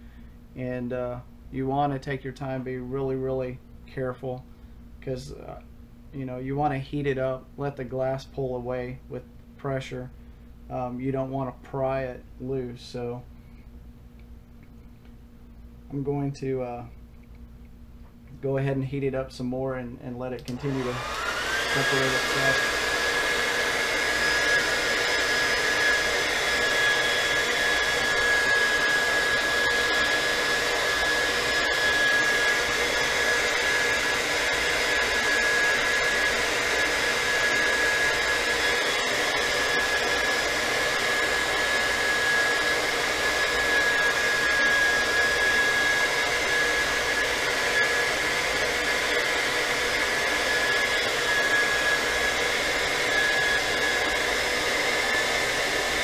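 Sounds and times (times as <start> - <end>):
hot-air blower whining: 20.1 - 56.0.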